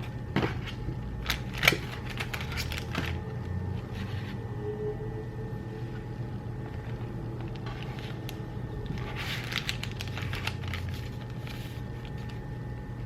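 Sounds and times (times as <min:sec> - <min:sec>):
steady low hum: 0:00.0 - 0:13.0
plastic packaging crinkling: 0:01.2 - 0:03.2, 0:06.8 - 0:12.5.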